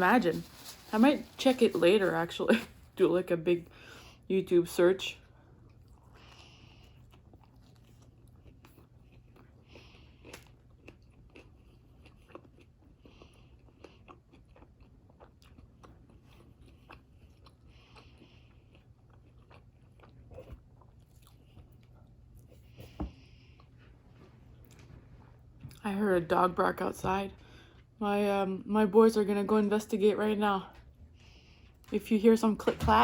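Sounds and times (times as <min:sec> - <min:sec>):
chewing and biting sandwich: 0:05.2 - 0:25.6.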